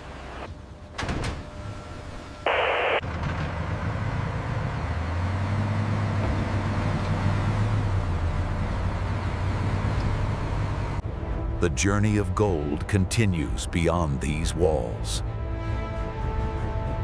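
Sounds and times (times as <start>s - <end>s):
burst of radio static: 2.5s - 3.0s.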